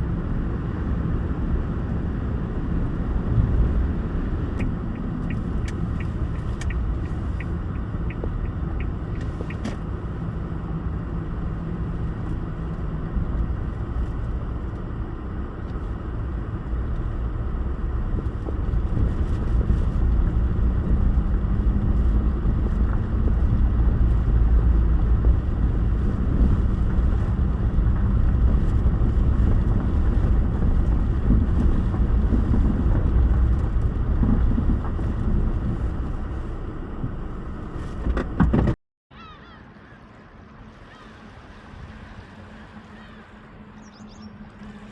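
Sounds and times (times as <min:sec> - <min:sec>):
car engine and road rumble: 0:00.0 - 0:44.9
light regular ticking: 0:04.6 - 0:09.6.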